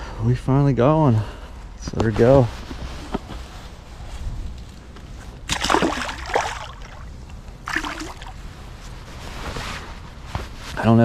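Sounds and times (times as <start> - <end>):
water splashing: 5.5 - 8.5.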